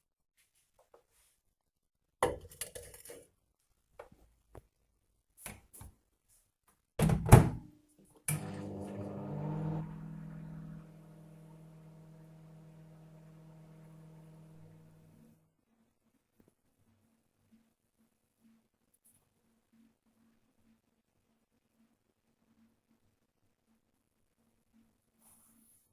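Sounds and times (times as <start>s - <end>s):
microwave oven humming: 8.3s - 15.4s.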